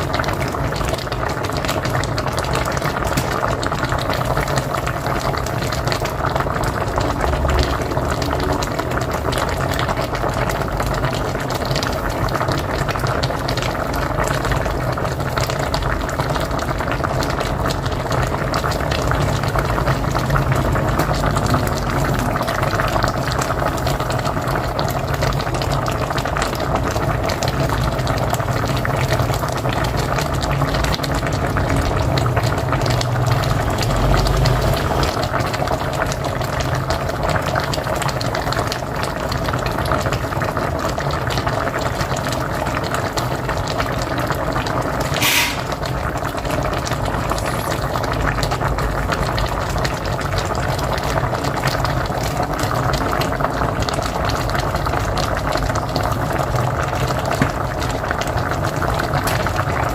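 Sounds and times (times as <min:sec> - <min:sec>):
pot boiling hard: 0:00.0 - 0:59.9
brief sharp sound: 0:45.2 - 0:45.8.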